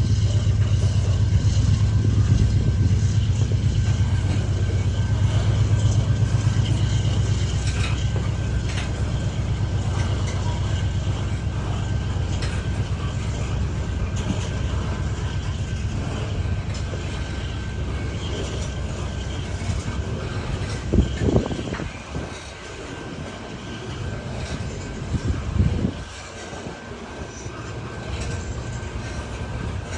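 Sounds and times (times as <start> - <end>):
freight train rumbling past: 0.0 - 29.9.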